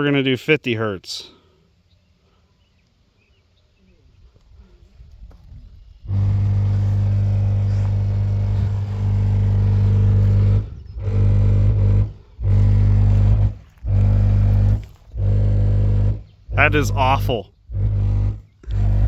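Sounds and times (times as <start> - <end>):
deep test tone hum: 5.9 - 19.0.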